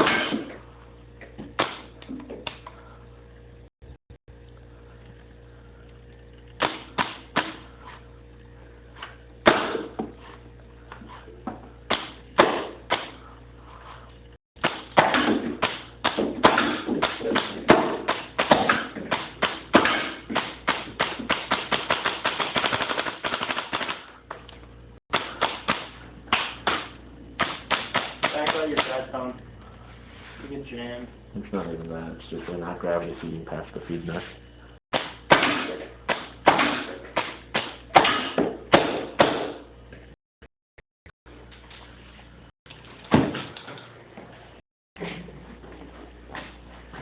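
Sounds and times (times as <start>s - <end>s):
paintball marker firing: 25.1s - 29.0s.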